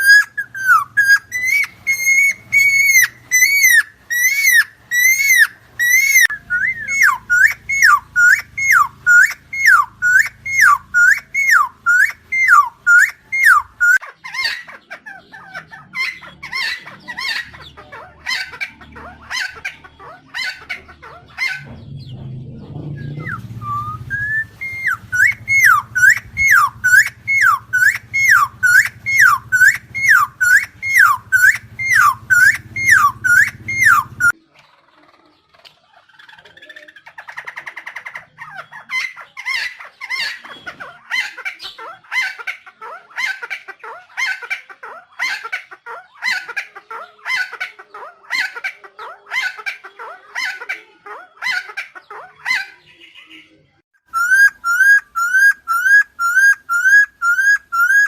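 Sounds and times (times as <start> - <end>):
bird whistled calls: 0.0 - 14.7, 22.9 - 34.4, 54.1 - 58.0.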